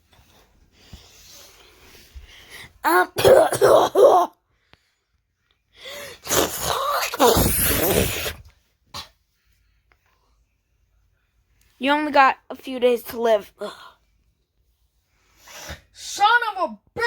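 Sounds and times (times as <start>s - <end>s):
person coughing hard: 2.9s - 4.3s, 6.2s - 8.4s.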